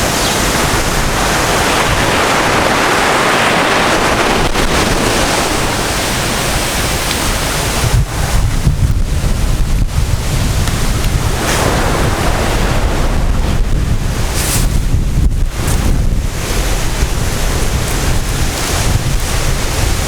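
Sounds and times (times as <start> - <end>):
surf washing on shore: 0.0 - 20.0
wind buffeting microphone: 0.0 - 20.0.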